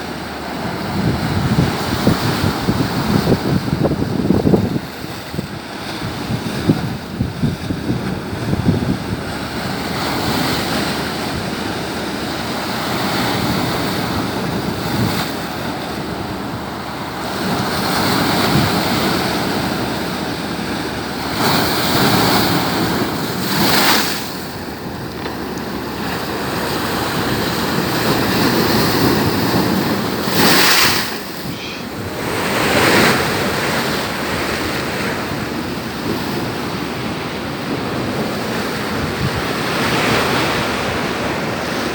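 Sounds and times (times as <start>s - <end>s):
surf breaking on shore: 0.0s - 41.9s
waves crashing: 0.0s - 41.9s
wind buffeting microphone: 0.0s - 41.9s.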